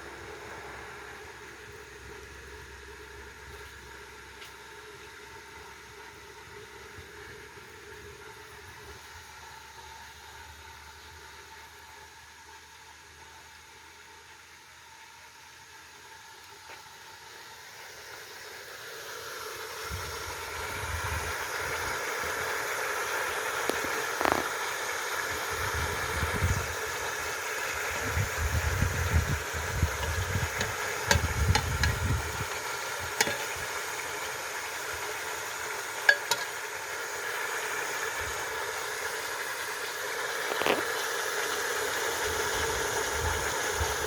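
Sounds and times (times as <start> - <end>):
food sizzling in a pan: 26.7 - 43.1
sharp clicks and knocks: 30.0 - 32.0, 33.2 - 33.5.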